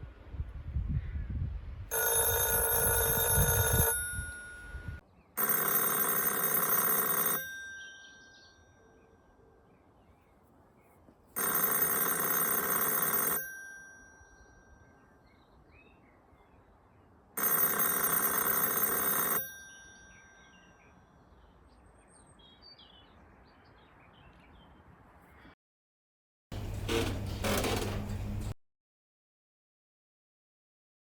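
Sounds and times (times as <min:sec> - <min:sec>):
telephone ringing different tone: 0:01.9 - 0:08.1, 0:11.4 - 0:14.2, 0:17.4 - 0:20.1
telephone bell ringing: 0:01.9 - 0:08.6, 0:11.4 - 0:14.8, 0:17.4 - 0:20.6.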